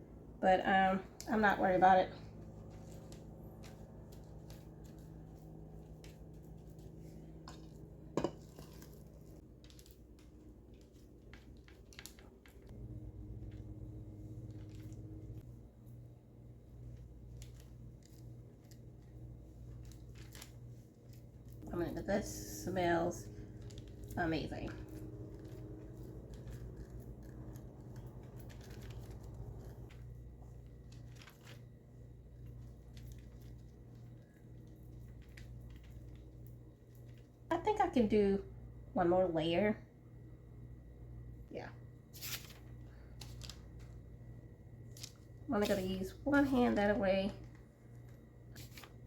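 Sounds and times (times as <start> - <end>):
low steady hum: 0.0 - 49.0
parchment paper rustling: 2.1 - 37.5, 42.1 - 49.0
soft squishes of raw meat: 2.3 - 21.6, 22.8 - 37.5.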